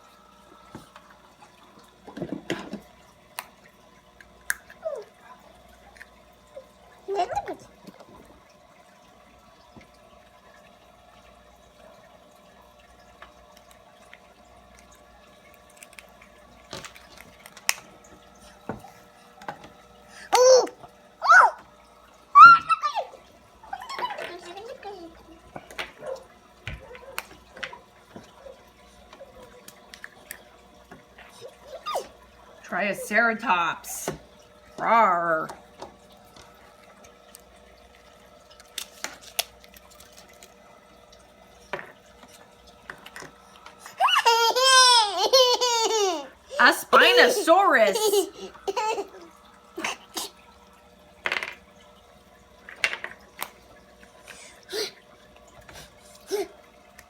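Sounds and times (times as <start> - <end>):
plastic clicks and rustles: 16.7 - 17.9.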